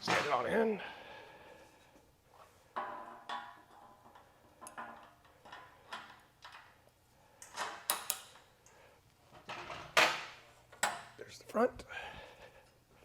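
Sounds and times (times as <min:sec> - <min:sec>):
spring pins clicking: 0:07.4 - 0:08.4.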